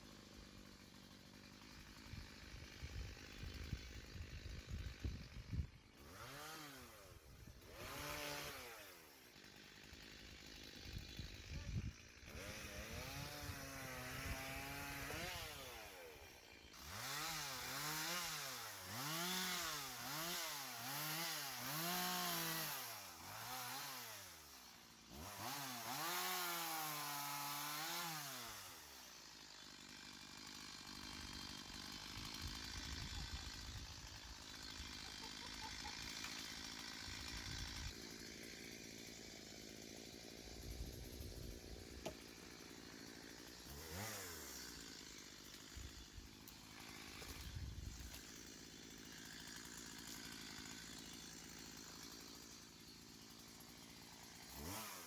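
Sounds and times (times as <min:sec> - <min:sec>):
chainsaw revving and idling: 0:00.0 - 0:55.0.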